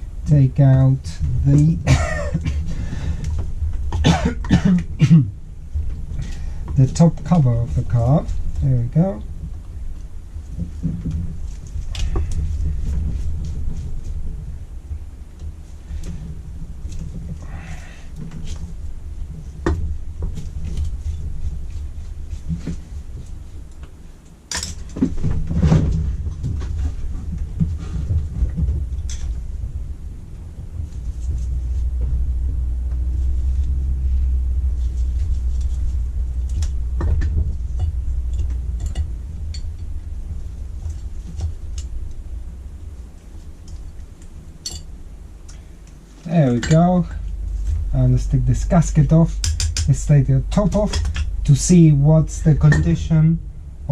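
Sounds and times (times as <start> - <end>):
low rumble: 0.0 - 53.9
metal parts and tools clicking: 44.6 - 44.9.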